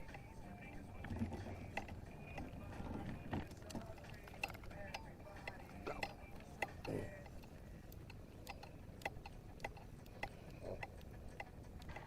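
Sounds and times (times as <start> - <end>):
faint steady background noise: 0.0 - 12.0
sharp light ticks and taps: 3.6 - 12.0.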